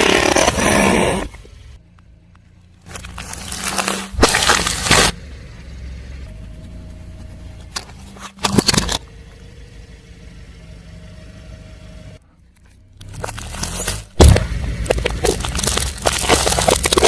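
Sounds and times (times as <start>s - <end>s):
crunch under a tyre: 0.0s - 5.2s, 12.5s - 17.0s
car engine running low: 0.3s - 17.0s.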